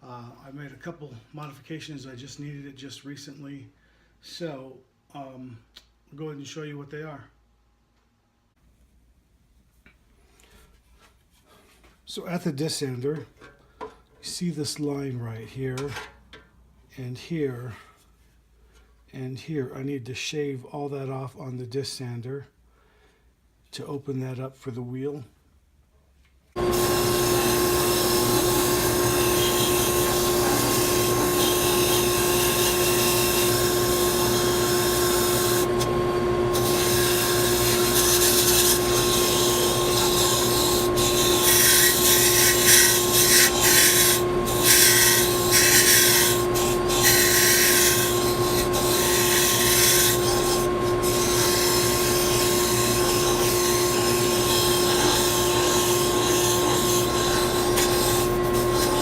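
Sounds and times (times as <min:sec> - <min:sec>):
disc sander motor hum: 0:26.6 - 0:59.0
wood grinding on sanding disc: 0:26.6 - 0:59.0.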